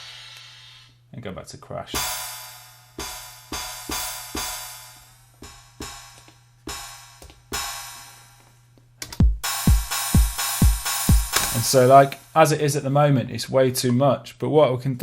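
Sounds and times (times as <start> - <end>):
kick drum beat: 2.0 - 2.4, 3.0 - 8.5, 9.1 - 12.4
crash cymbal hits: 2.0 - 8.4, 9.4 - 13.0.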